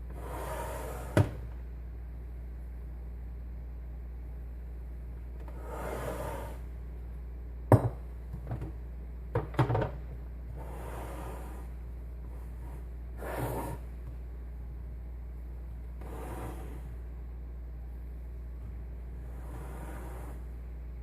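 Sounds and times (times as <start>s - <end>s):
steady low hum: 0.0s - 21.0s
hard objects knocking and clattering: 7.7s - 10.0s.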